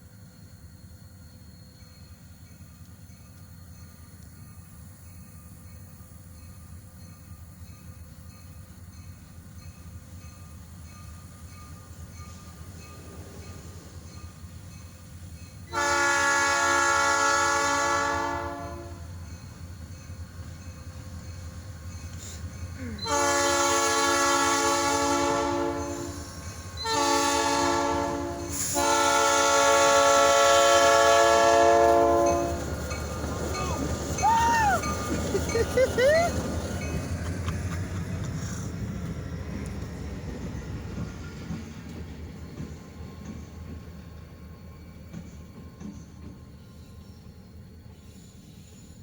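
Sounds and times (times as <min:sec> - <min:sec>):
locomotive rumble: 0:01.2 - 0:48.8
locomotive air horn: 0:15.7 - 0:19.2, 0:22.9 - 0:32.6.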